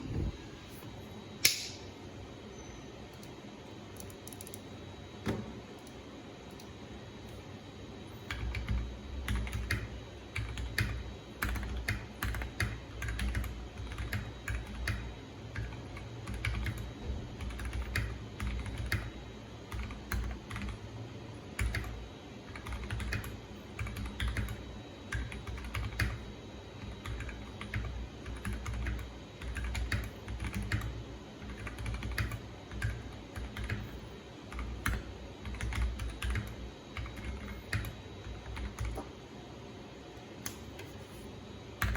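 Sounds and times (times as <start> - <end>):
mechanical keyboard typing: 4.0 - 4.6, 8.3 - 19.1, 19.7 - 20.8, 21.6 - 26.2, 26.8 - 33.8, 34.5 - 39.0.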